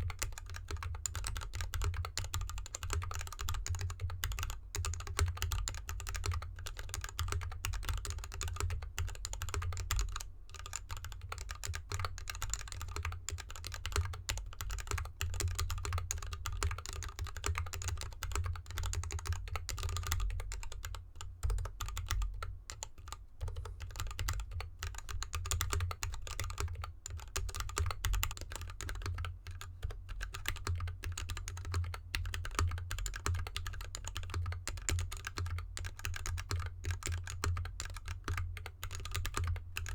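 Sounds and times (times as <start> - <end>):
mechanical keyboard keys clacking: 0.2 - 10.2, 30.2 - 39.9.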